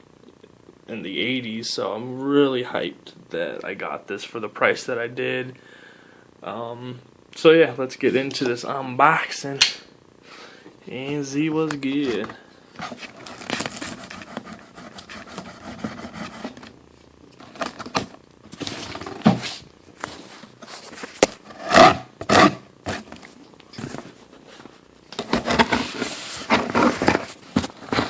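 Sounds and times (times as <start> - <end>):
cardboard scraping and rustling: 12.0 - 16.7, 17.4 - 28.0.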